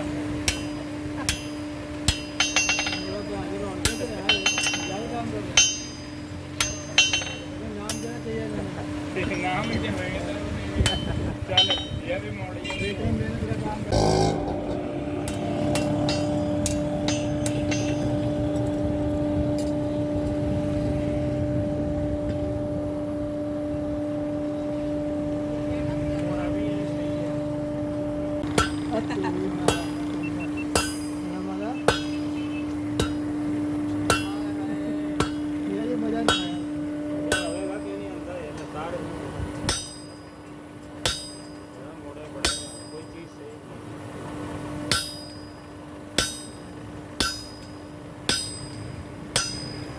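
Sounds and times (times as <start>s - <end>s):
steady low hum: 0.0s - 49.9s
hammer striking metal on anvil: 0.4s - 8.6s, 10.8s - 12.0s, 13.9s - 18.8s, 28.4s - 38.8s, 39.5s - 41.8s, 42.4s - 43.3s, 44.8s - 49.9s
hammer blows on metal: 29.7s - 38.0s.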